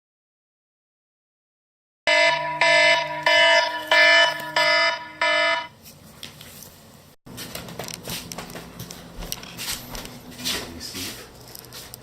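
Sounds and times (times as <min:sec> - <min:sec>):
electronic alarm beeping: 0:02.1 - 0:05.7.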